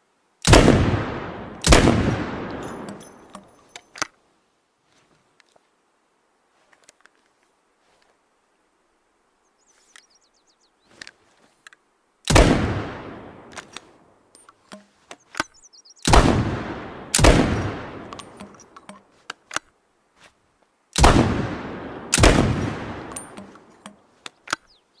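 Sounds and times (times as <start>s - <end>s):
shotgun blasts echoing: 0.4s - 3.2s, 12.3s - 13.5s, 16.1s - 18.5s, 21.0s - 23.6s.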